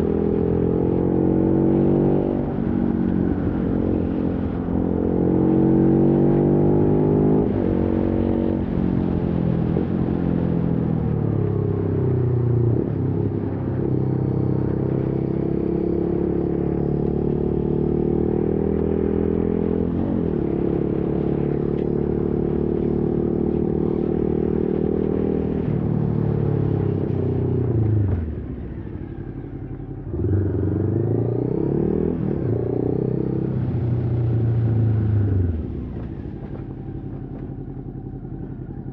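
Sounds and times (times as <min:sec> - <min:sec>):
motorcycle engine revving: 0:12.7 - 0:38.9.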